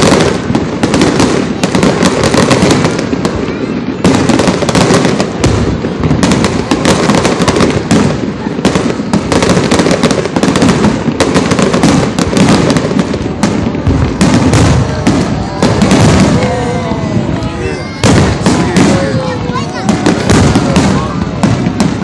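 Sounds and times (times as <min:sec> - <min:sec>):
fireworks bursting and crackling: 0:00.0 - 0:22.0
rumbling echo: 0:11.8 - 0:22.0.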